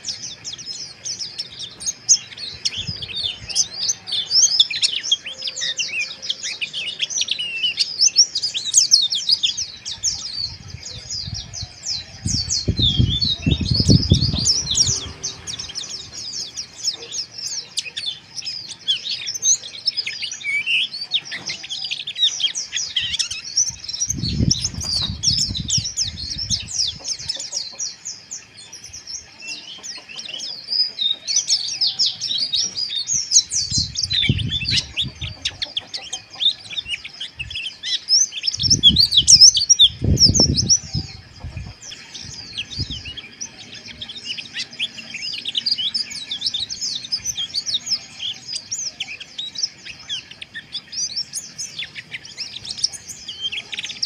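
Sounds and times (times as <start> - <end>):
birds twittering: 0.0 - 54.0.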